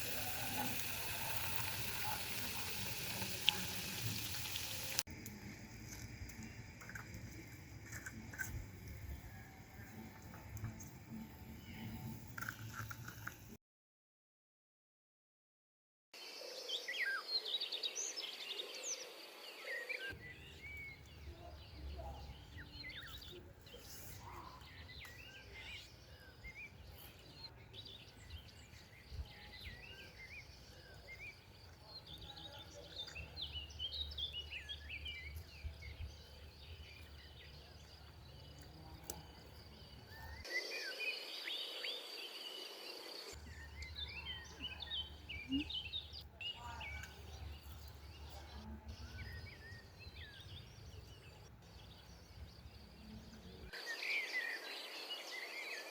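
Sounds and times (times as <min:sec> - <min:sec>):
small birds chirping: 0:00.0 - 0:13.3, 0:16.8 - 0:55.9.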